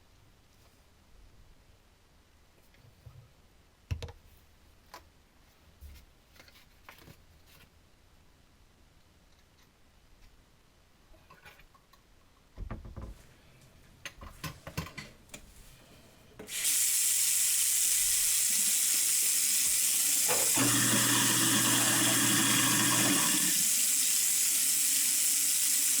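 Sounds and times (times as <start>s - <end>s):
garbage disposal motor humming: 16.5s - 26.0s
tap running water into sink: 16.5s - 26.0s.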